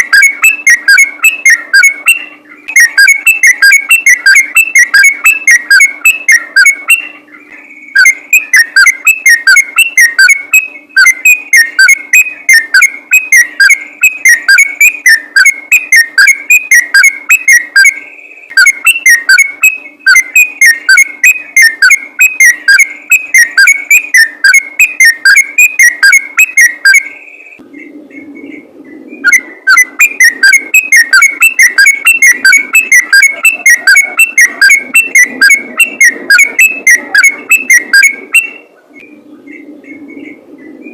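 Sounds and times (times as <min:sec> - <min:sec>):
bird singing whistled notes: 0:00.0 - 0:40.9.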